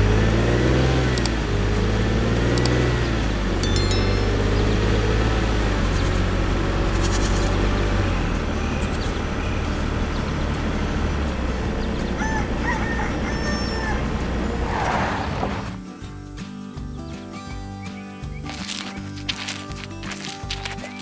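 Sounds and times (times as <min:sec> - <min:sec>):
heavy engine rumbling: 0:00.0 - 0:15.8
animal calls: 0:05.5 - 0:11.0, 0:11.6 - 0:15.7.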